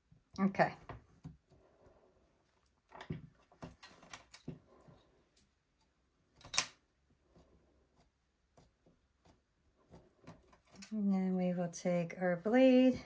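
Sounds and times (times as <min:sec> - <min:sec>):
soft handling clicks and knocks: 0:02.8 - 0:06.7.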